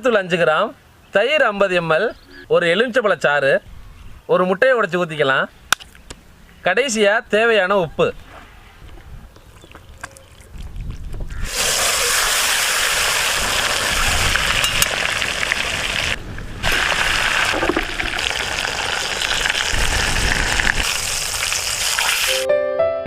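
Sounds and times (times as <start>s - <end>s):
meat sizzling in hot oil: 11.4s - 22.4s.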